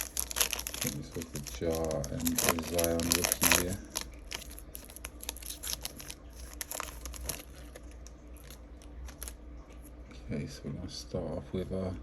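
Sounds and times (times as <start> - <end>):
plastic wrapper tearing and crinkling: 0.0 - 9.4.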